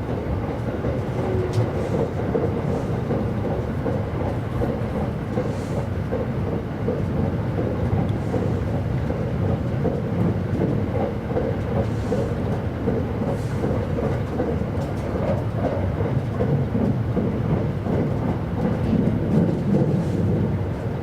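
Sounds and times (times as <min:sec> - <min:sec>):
train wheels rumbling on rail: 0:00.0 - 0:21.0.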